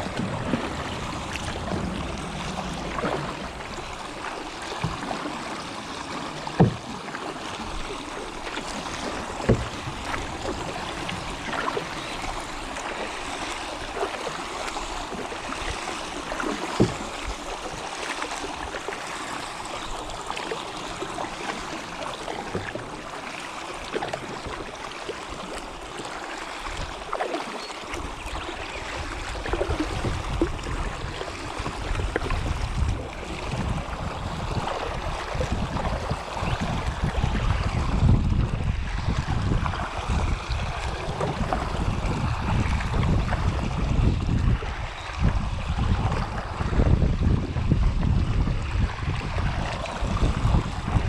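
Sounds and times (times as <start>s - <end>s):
wind buffeting the microphone: 0.0s - 7.0s, 28.3s - 51.0s
water splashing around a kayak: 0.0s - 51.0s.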